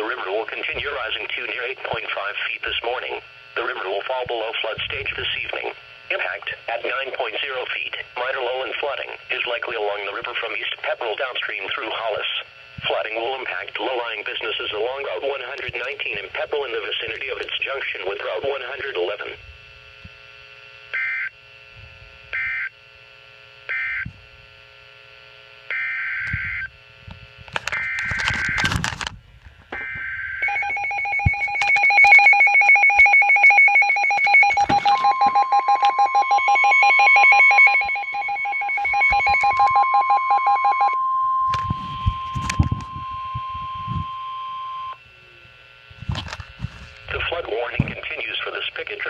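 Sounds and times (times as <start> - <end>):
static: 0.0 - 44.2, 44.8 - 49.0
steady warning tone: 0.0 - 49.0
pulsing two-pitched alarm tone: 20.9 - 21.4, 22.3 - 22.8, 23.6 - 24.1, 25.7 - 26.8, 29.7 - 45.1
short data bursts: 27.5 - 29.0, 29.7 - 45.1.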